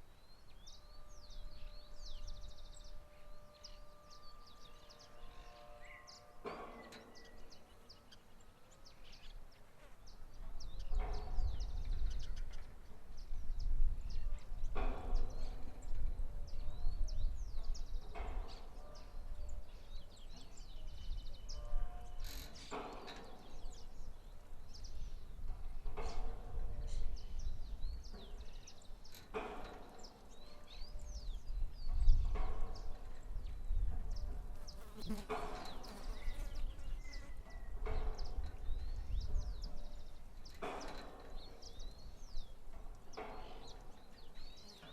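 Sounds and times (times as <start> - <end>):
wind rumble on microphone: 10.3 - 22.8, 23.4 - 34.8, 35.6 - 43.8
birds chirping: 26.9 - 44.9.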